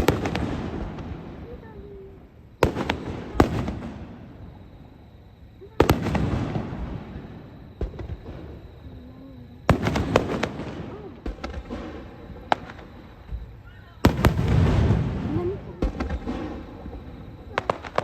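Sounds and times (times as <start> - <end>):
fireworks bursting: 0.0 - 18.0
rolling rumble and crackle: 5.7 - 18.0.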